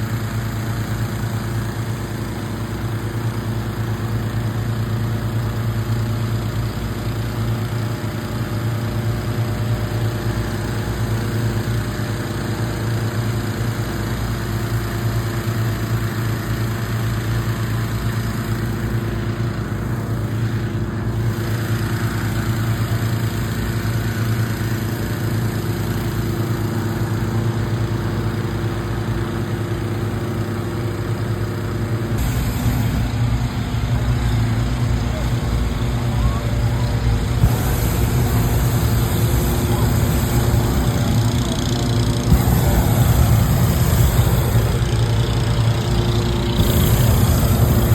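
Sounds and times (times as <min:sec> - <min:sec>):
vehicle engine humming: 0:29.9 - 0:47.9.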